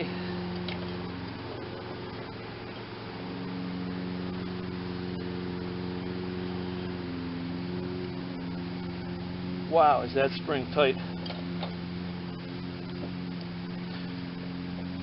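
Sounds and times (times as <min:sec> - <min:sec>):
low mechanical hum: 0:00.0 - 0:15.0
drive belt clicks: 0:11.2 - 0:11.8.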